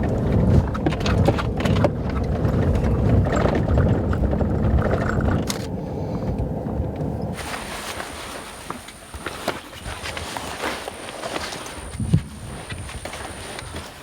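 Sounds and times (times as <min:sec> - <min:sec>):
knocks and rattles: 0:00.0 - 0:07.0
vehicle rumble on rough ground: 0:00.0 - 0:14.0.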